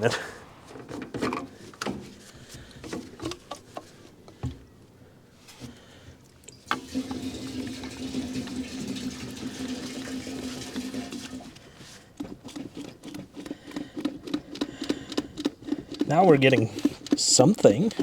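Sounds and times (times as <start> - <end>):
car starter whirring: 6.4 - 12.0
quick even engine pulses: 11.8 - 18.0.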